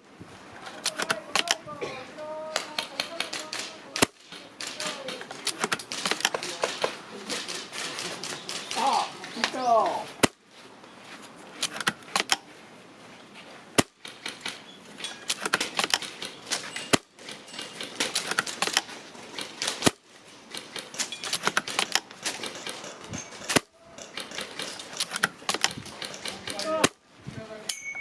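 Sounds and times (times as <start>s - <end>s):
rifle bolt clicks: 2.5s - 9.5s
airsoft rifle shots: 2.5s - 10.4s.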